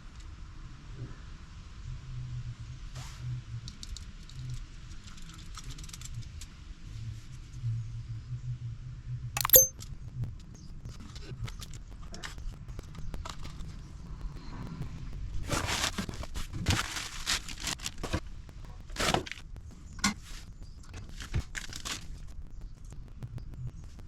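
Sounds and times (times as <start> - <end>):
small clicks and knocks: 9.4 - 9.7
crinkling and rustling: 15.4 - 22.9.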